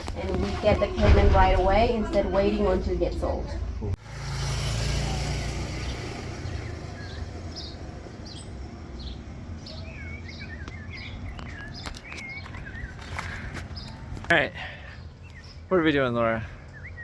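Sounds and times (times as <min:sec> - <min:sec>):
low rumble: 0:00.0 - 0:09.6
birds chirping: 0:00.0 - 0:17.0.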